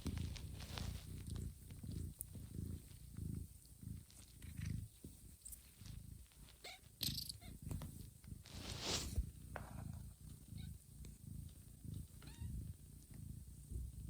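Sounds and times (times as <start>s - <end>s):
cat purring: 0.0s - 14.0s
brief rustle: 8.5s - 9.2s.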